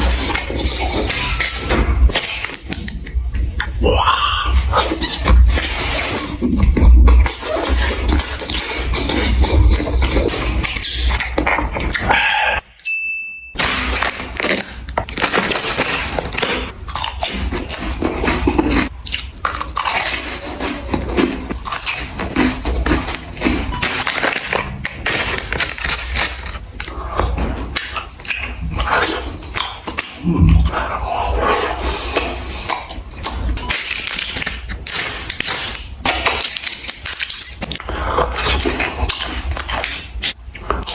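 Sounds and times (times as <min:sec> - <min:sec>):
food crunching while chewing: 0:00.0 - 0:12.3, 0:13.6 - 0:40.9.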